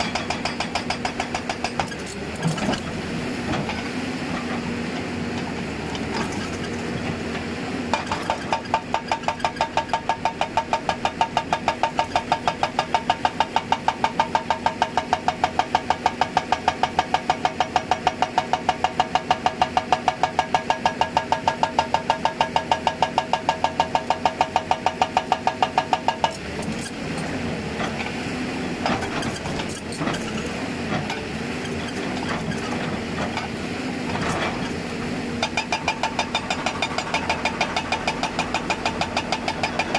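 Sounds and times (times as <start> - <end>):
hydraulic breaker hammering: 35.4 - 39.9.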